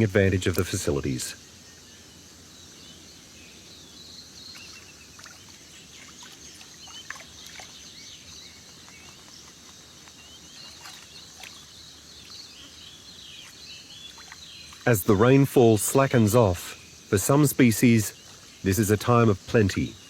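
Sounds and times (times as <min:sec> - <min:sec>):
steady low hiss: 0:00.0 - 0:20.0
high bird chirps: 0:03.8 - 0:17.2.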